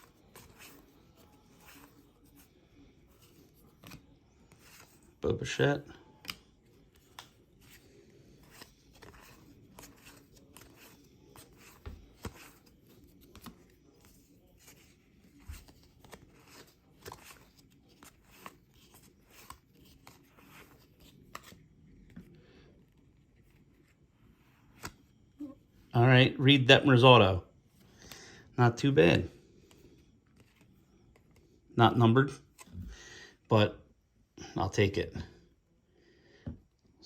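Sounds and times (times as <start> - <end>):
cardboard cards clicking and sliding: 0.0 - 25.2.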